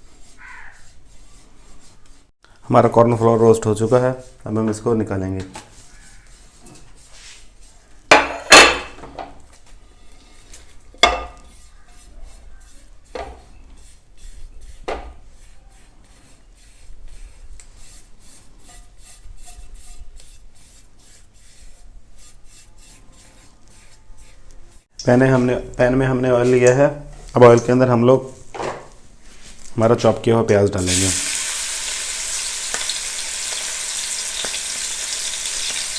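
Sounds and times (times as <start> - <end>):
spatula scraping frying pan: 0.0 - 2.3, 5.6 - 9.0, 9.7 - 24.9, 30.8 - 35.9
spatula knocking against pan: 11.0 - 11.4.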